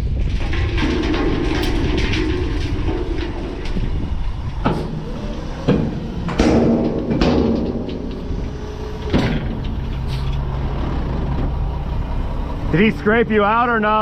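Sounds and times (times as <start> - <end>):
metallic bangs and clanks: 0.3 - 13.8
heavy diesel engine running: 0.4 - 14.0.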